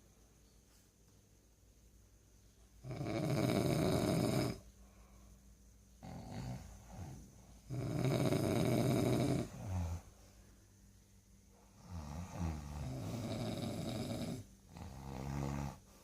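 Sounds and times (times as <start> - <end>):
person snoring loudly: 2.8 - 4.6, 6.0 - 10.1, 11.7 - 16.0.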